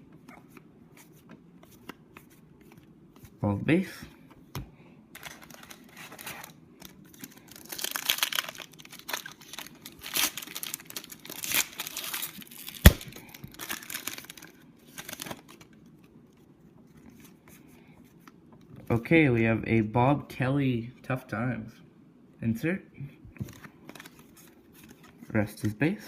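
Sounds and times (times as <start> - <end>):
wrapper tearing and crinkling: 5.2 - 15.7
cards rustling: 5.2 - 18.4, 23.4 - 25.3.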